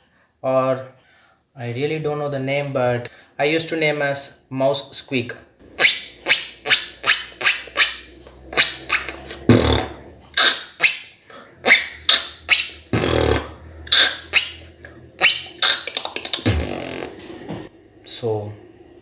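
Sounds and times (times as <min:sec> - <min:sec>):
high-pitched mouth squeak: 0:05.8 - 0:17.2
beatboxing percussion: 0:05.8 - 0:17.3.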